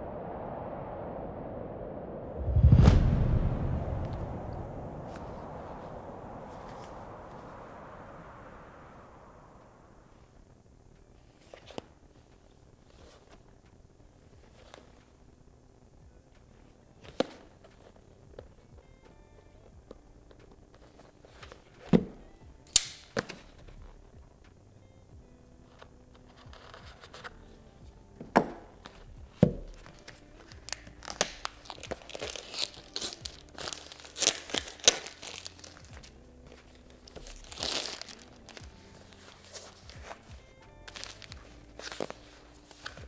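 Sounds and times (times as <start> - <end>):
faint music: 2.4 - 43.0
packaging tearing and crinkling: 29.7 - 40.2, 40.9 - 43.0.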